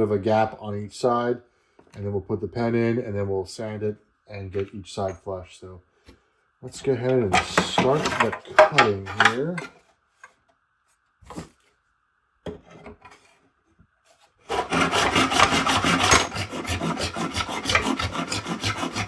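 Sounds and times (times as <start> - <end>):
handsaw cutting plastic: 14.4 - 19.0.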